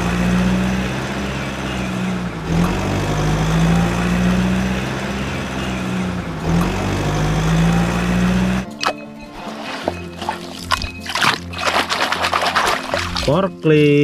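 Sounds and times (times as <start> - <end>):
vehicle engine idling: 0.0 - 8.8.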